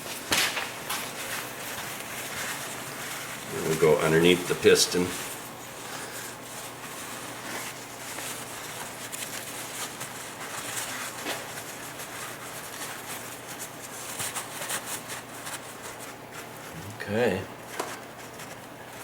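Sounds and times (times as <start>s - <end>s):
soft rustling: 0.0s - 19.0s
faint low hum: 16.6s - 17.6s.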